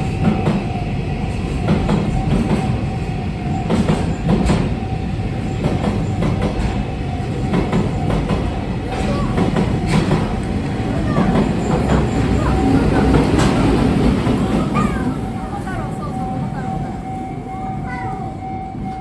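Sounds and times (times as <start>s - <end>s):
train wheels rumbling on rail: 0.0s - 19.0s
clacks over rail joints: 3.6s - 15.4s.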